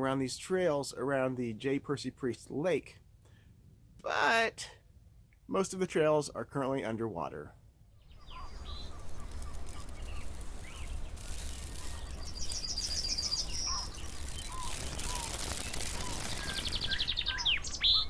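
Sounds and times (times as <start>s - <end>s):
bird chirps: 8.0s - 18.0s
bird high trill: 8.0s - 18.0s.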